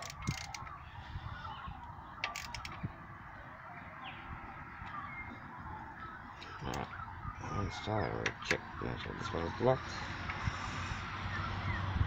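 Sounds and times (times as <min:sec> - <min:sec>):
socket wrench clicking: 0:00.0 - 0:00.6, 0:02.2 - 0:02.8.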